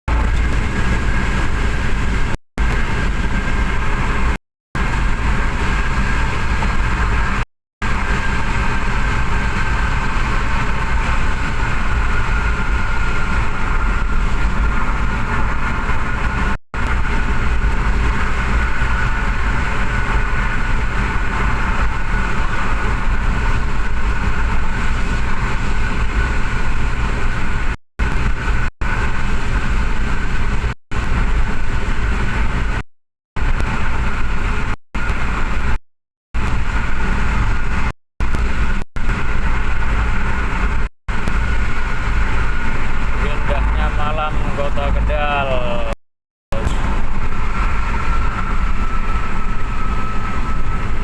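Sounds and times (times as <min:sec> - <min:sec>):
engine drone: 0:00.0 - 0:32.8, 0:33.4 - 0:35.8, 0:36.4 - 0:51.0
steady whine: 0:00.1 - 0:32.8, 0:36.4 - 0:51.0.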